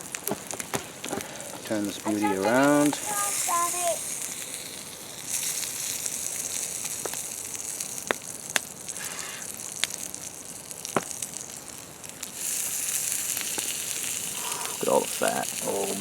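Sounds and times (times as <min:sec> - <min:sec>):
fat popping: 0:00.0 - 0:01.7, 0:06.5 - 0:10.1, 0:10.7 - 0:11.6
meat sizzling on hot rock: 0:00.0 - 0:16.0.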